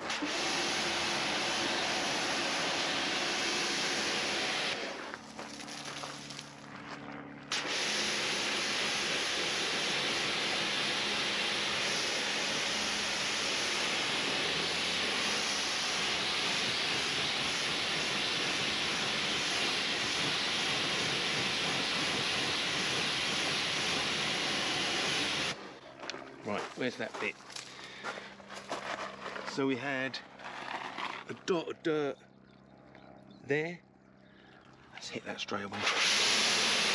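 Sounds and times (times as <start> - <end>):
pressure washer spraying: 0.0 - 4.8, 7.5 - 25.6, 35.8 - 36.9.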